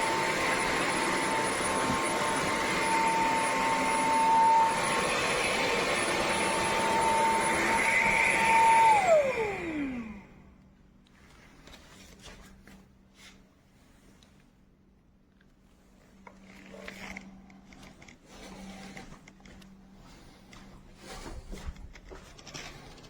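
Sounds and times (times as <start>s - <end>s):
vacuum cleaner motor whining: 0.0s - 10.4s.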